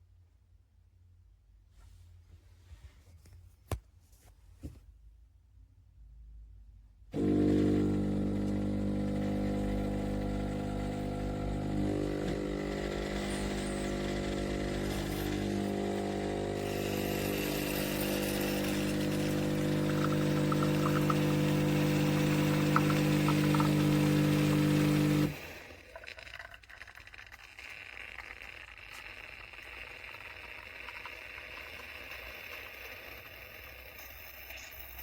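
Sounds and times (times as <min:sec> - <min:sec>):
espresso machine pump buzzing: 0:07.2 - 0:35.0.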